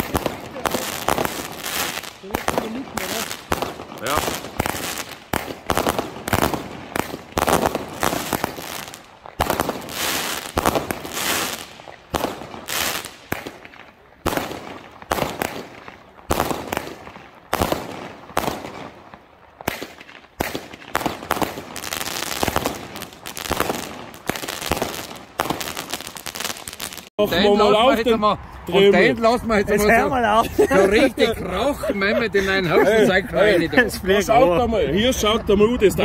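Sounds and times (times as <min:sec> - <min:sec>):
fireworks bangs: 0:00.0 - 0:27.2.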